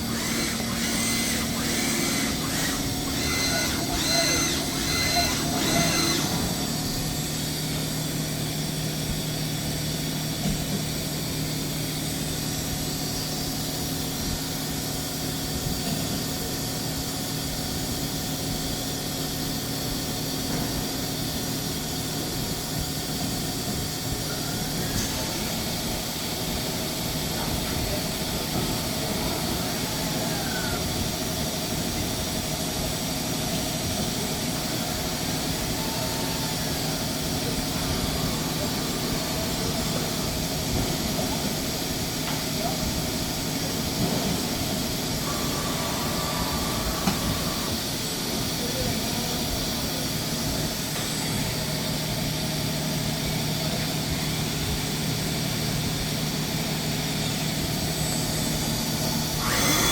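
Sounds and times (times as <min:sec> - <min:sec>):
machine pitch sweeps: 0:00.0 - 0:07.8
machining center hum and whine: 0:00.0 - 0:59.9.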